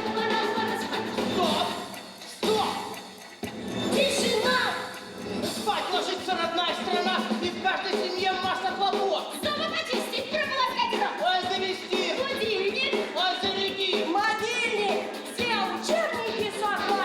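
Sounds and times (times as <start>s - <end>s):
backing music: 0.0s - 17.0s
voices singing: 0.0s - 17.0s.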